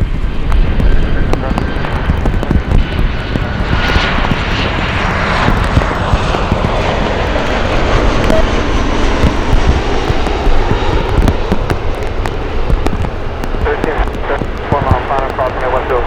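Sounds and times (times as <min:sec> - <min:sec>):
jet engines roaring: 0:00.0 - 0:16.0.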